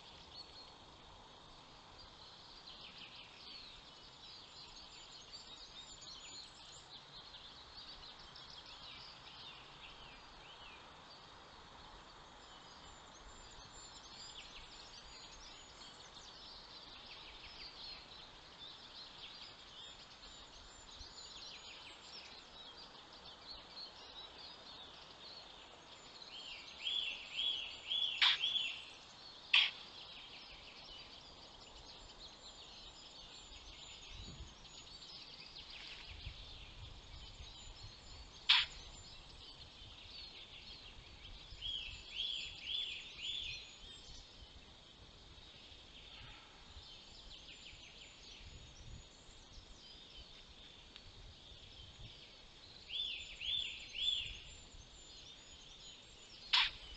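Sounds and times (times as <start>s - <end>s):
songbird singing: 0.0s - 56.9s
faint bird calls: 27.0s - 30.6s, 38.4s - 39.2s, 46.0s - 46.8s, 56.4s - 56.9s.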